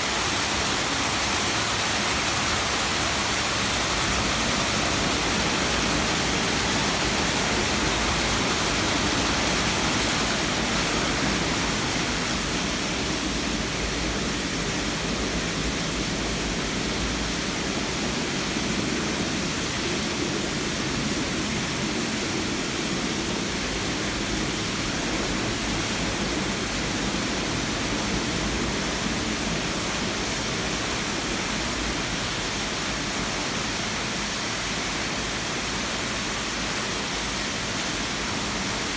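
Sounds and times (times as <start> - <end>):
water pouring and splashing: 0.0 - 21.4.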